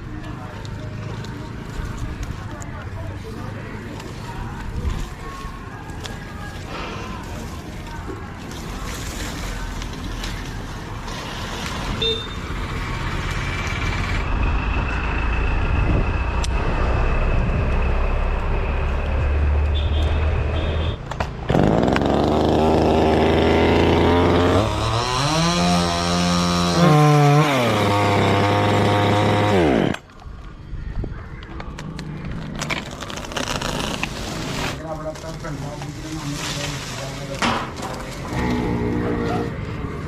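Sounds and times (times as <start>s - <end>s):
chainsaw revving: 21.5s - 30.0s.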